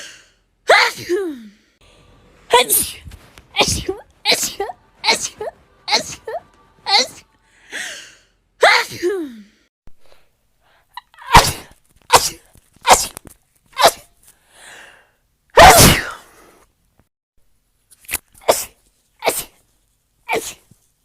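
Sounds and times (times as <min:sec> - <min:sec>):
woman sneezing: 0:08.6 - 0:09.4, 0:11.2 - 0:13.2, 0:13.8 - 0:14.1, 0:15.6 - 0:16.3, 0:18.4 - 0:19.6, 0:20.3 - 0:20.7.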